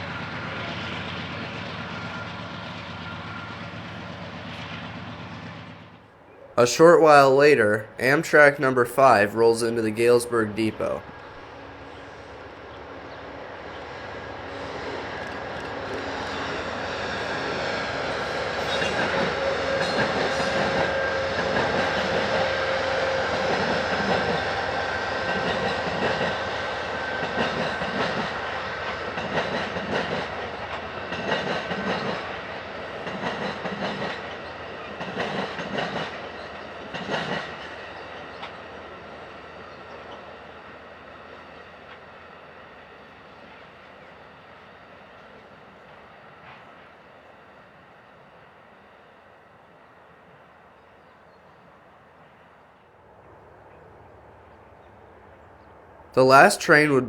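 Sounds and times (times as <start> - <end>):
passenger train rolling: 0.0 - 50.7, 51.6 - 57.0
train wheels clicking over rail joints: 14.8 - 17.6.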